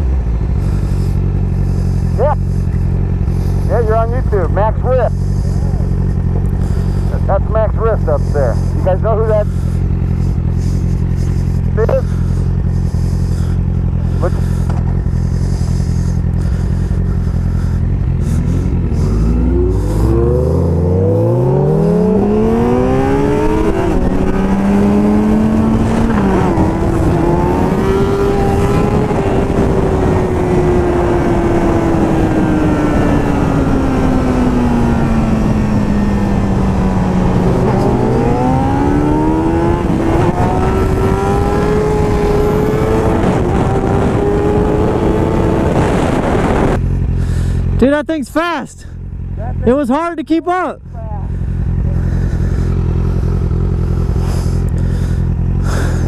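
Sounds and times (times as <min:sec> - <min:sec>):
motorcycle engine accelerating: 0:00.0 - 0:56.0
wind rushing over microphone: 0:18.8 - 0:46.8.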